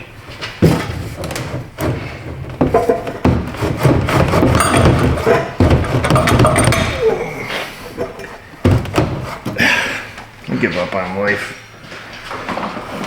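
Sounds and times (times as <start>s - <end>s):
sharp thumps: 0.6s - 9.7s
metal pipe clanking and scraping: 0.6s - 10.0s.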